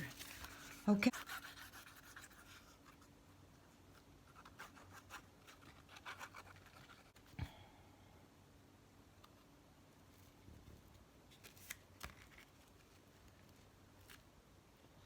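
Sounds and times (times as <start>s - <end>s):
paper scratching and rubbing: 0.0s - 3.1s, 3.9s - 7.2s.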